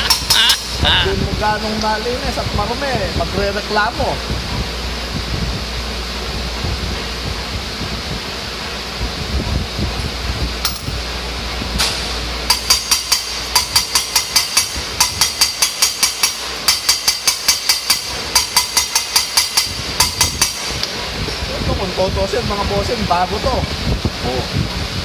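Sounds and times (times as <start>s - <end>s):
metallic tapping on cylinder head: 10.7s - 11.0s.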